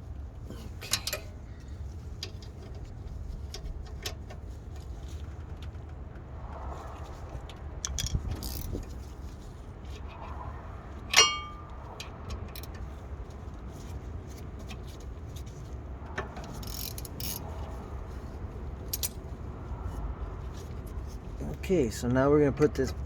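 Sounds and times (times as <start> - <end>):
faint clicks and rustles: 0.0 - 21.7
steady low rumble: 0.0 - 23.0
metallic clink: 11.1 - 11.7.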